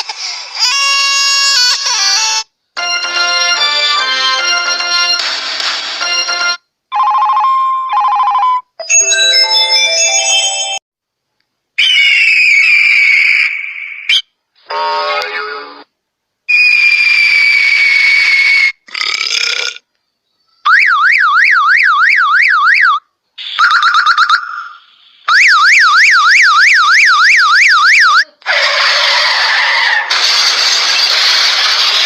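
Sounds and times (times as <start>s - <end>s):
falling whistle tone: 11.8s - 14.2s, 16.5s - 18.8s
fast warbling siren: 25.3s - 28.7s
short noisy effects: 28.6s - 32.0s.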